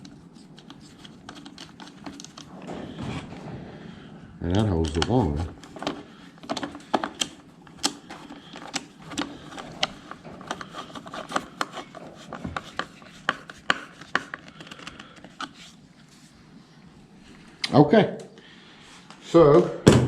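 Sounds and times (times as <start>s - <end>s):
plastic parts clicking and knocking: 0.0s - 3.5s, 4.5s - 15.6s.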